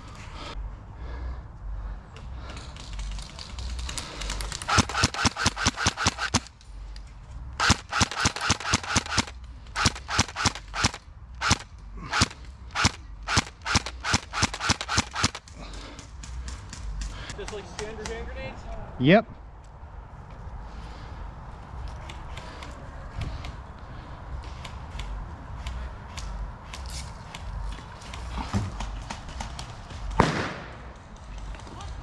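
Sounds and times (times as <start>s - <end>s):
airsoft guns firing: 4.2s - 6.5s, 7.6s - 15.6s, 28.9s - 31.0s.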